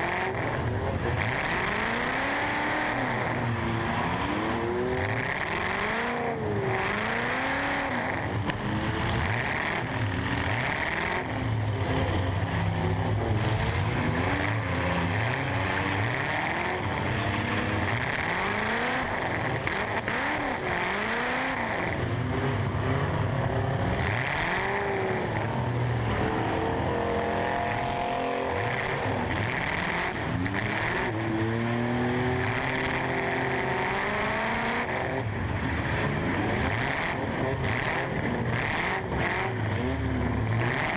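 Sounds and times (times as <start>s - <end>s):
truck engine revving: 0.0s - 40.9s.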